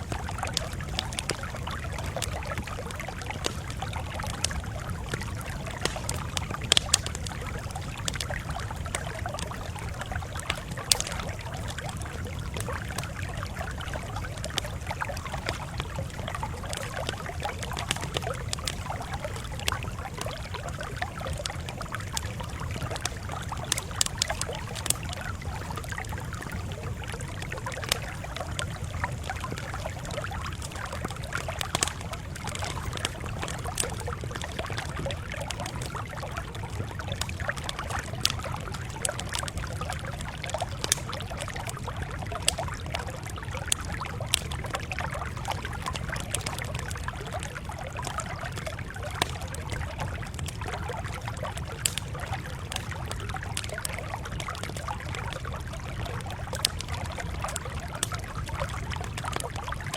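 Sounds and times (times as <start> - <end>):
sharp pops: 0.0 - 36.0
wood fire crackling: 0.0 - 59.9.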